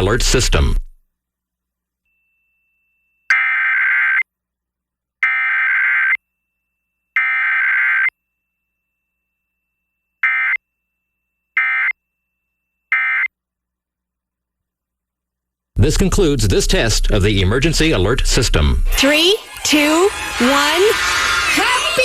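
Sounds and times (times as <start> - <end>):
raspy two-tone digital screech: 18.9 - 22.0.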